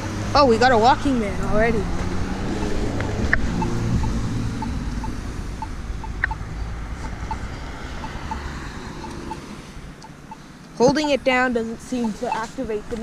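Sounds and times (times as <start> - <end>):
road traffic: 0.0 - 13.0
pedestrian button ticking: 2.6 - 6.5, 10.0 - 10.8.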